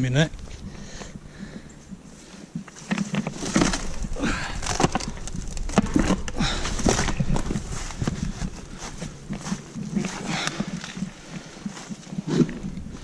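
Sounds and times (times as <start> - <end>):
low rumble: 0.0 - 13.0
twigs crackling and snapping: 0.0 - 13.0
scuffing footsteps: 2.7 - 13.0.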